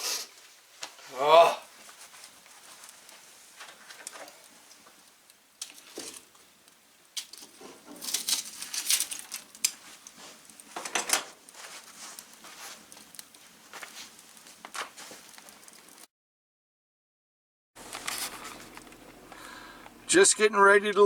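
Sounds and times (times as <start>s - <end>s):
rustling and scuffing: 1.7s - 5.1s, 7.2s - 16.0s, 17.8s - 19.0s.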